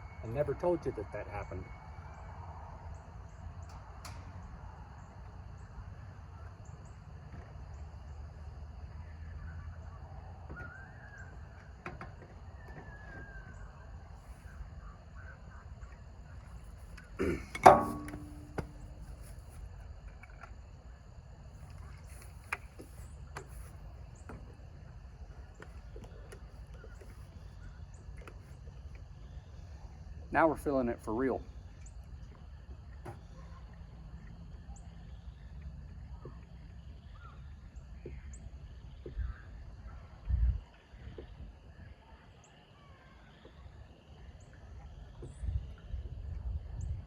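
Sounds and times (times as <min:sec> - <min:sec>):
low steady rumble: 0:13.8 - 0:40.8.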